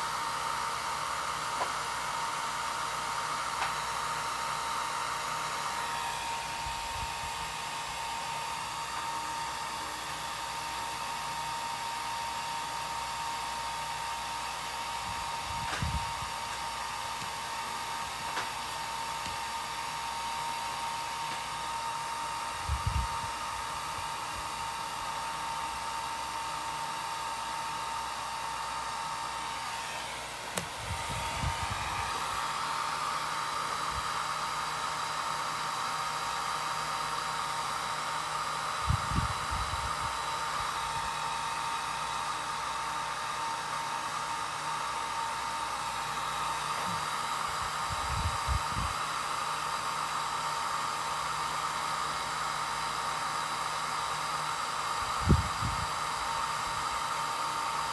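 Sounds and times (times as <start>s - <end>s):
hot-air dryer running: 0.0s - 57.9s.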